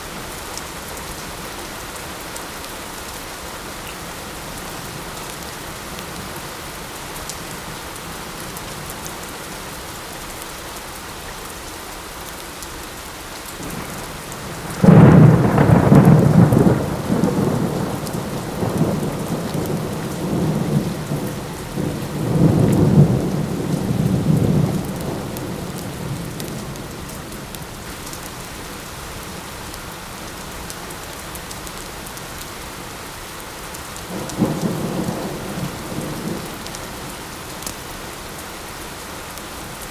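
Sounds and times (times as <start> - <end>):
steady rain: 0.0 - 39.9
thunder clap and rumble: 13.6 - 27.6, 34.1 - 37.1.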